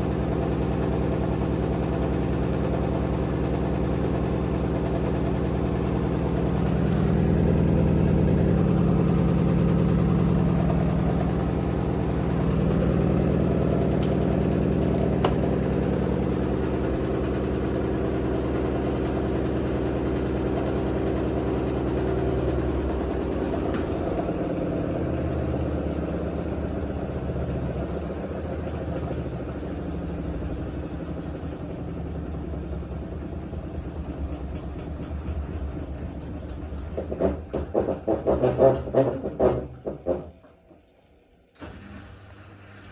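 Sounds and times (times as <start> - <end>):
washer-dryer spinning unbalanced: 0.0 - 31.9.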